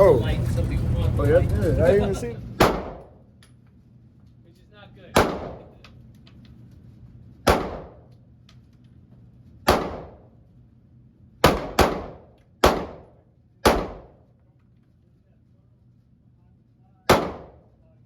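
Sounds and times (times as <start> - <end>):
handgun shots echoing: 2.6 - 3.1, 5.2 - 5.8, 7.5 - 8.0, 9.7 - 10.2, 11.4 - 14.1, 17.1 - 17.6.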